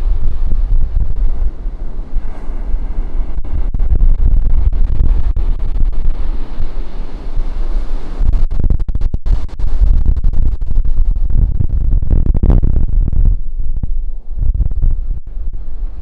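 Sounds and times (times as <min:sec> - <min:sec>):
ocean surf on beach: 0:00.0 - 0:08.5
wind buffeting microphone: 0:00.0 - 0:16.0.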